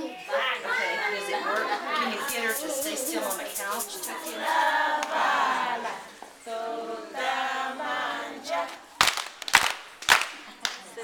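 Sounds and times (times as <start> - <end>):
group singing unaccompanied: 0.0 - 9.3
sharp claps: 9.0 - 11.0.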